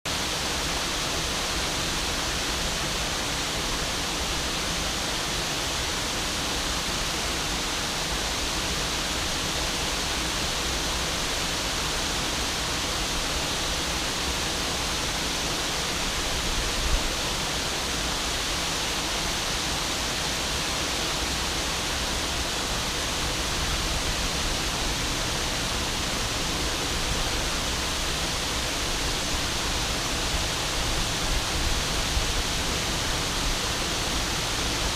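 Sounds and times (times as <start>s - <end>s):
waterfall rushing: 0.1s - 34.9s.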